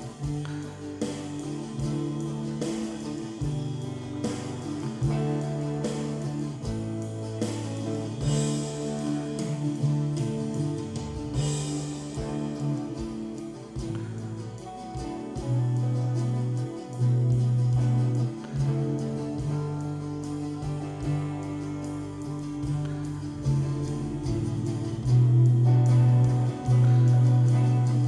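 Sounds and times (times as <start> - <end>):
bass notes: 0.0 - 28.0
guitar: 0.0 - 28.0
steady drum beat: 0.0 - 28.0.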